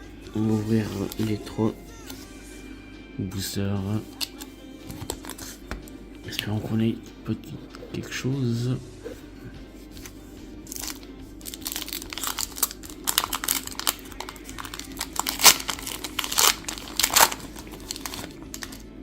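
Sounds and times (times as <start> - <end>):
foil wrapper crinkling and tearing: 4.1 - 5.6, 10.7 - 18.9.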